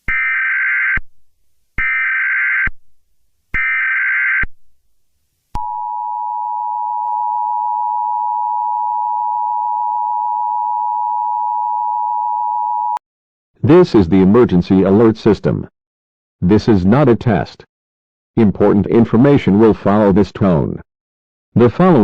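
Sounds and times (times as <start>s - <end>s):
steady two-tone beep: 5.6s - 13.0s.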